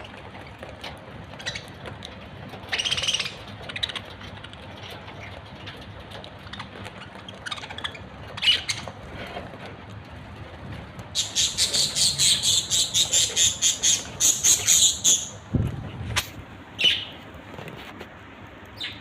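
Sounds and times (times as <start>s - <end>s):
budgerigars chirping: 2.6s - 4.2s, 6.5s - 9.0s, 11.2s - 15.4s, 16.8s - 17.2s.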